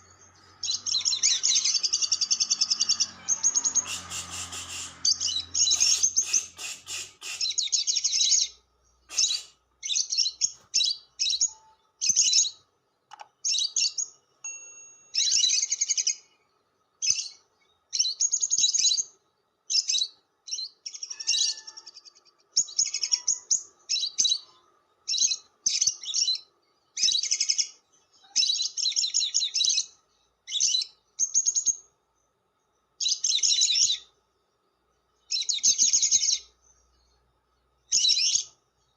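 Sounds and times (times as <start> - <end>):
lovebird chattering calls: 0.6 - 8.5, 9.1 - 10.6.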